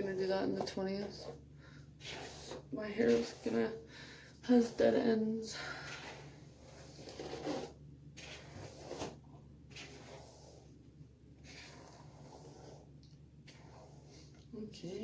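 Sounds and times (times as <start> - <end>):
hairbrush swishing through hair: 2.0 - 3.7, 5.9 - 10.7, 11.4 - 14.4.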